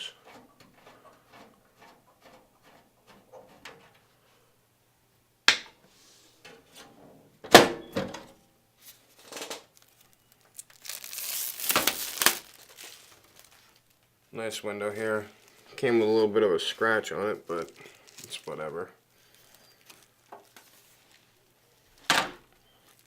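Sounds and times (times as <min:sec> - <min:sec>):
rustling scrape: 0:08.8 - 0:14.0, 0:19.2 - 0:22.0.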